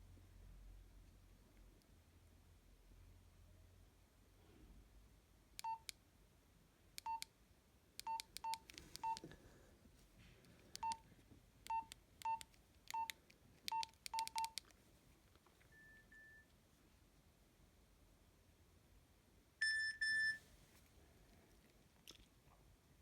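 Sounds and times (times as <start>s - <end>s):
keypad click and beep: 5.6s - 5.9s, 7.0s - 7.3s, 8.0s - 9.2s, 10.8s - 11.0s, 11.7s - 14.6s, 19.6s - 20.4s.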